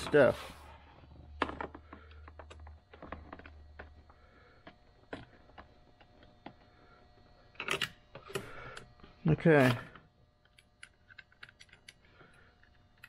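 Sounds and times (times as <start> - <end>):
small plastic parts clicking: 10.4 - 13.0.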